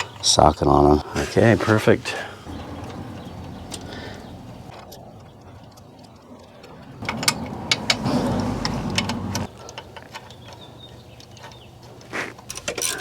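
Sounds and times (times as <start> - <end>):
metal clatter: 2.5 - 10.4.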